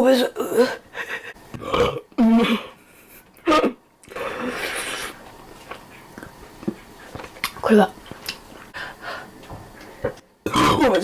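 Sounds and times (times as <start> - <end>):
woman burping: 1.6 - 2.7, 10.5 - 11.0.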